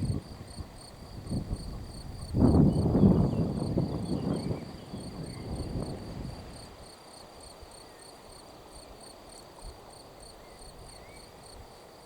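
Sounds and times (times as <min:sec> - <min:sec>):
cricket chirping: 0:00.0 - 0:12.0
faint outdoor background noise: 0:00.0 - 0:12.0.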